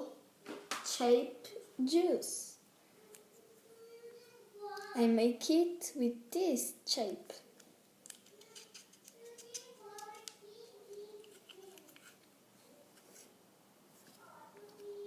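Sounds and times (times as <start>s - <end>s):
plastic tools clicking and tapping: 7.6s - 12.3s
faint voice: 14.2s - 15.0s.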